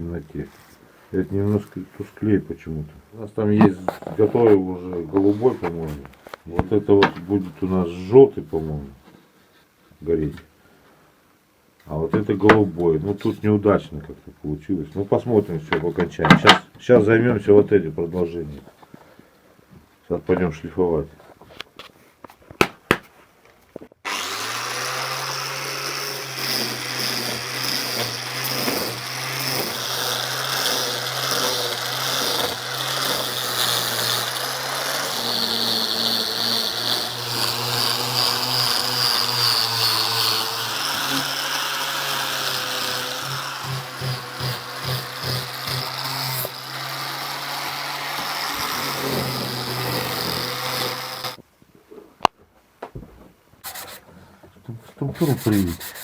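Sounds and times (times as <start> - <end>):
power sander sanding wood: 24.1 - 51.4, 53.6 - 54.0, 55.2 - 56.0.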